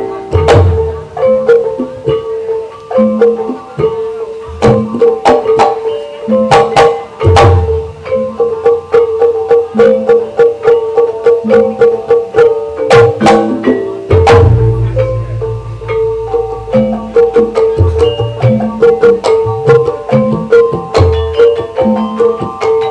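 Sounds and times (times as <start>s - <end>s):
sharp drum strokes: 0.0s - 22.9s
tuned percussion melody: 0.0s - 22.9s
deep booms: 14.2s - 18.0s.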